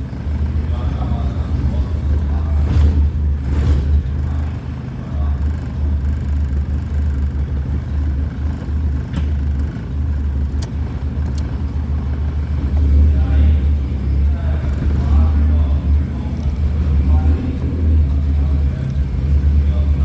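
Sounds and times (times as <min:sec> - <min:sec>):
car engine running: 0:00.0 - 0:20.0.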